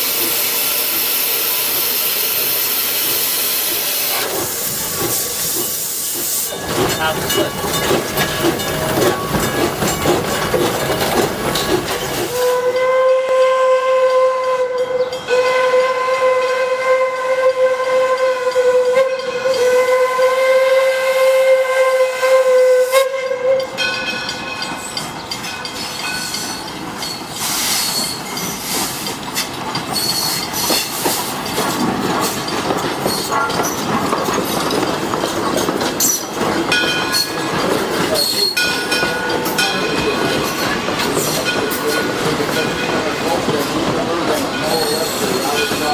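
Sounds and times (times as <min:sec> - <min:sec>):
steam hiss: 0:00.0 - 0:12.6, 0:25.7 - 0:32.5, 0:37.3 - 0:45.9
moving train noise: 0:00.0 - 0:45.9
steam whistle blasts: 0:12.3 - 0:23.8.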